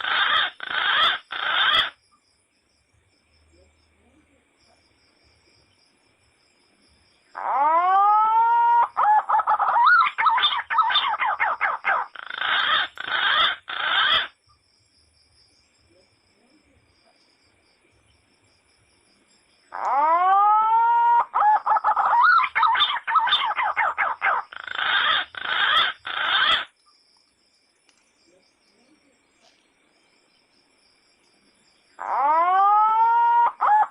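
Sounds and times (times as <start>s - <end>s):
recorded animal call: 0.0s - 2.1s, 7.2s - 14.4s, 19.7s - 26.8s, 31.8s - 33.9s.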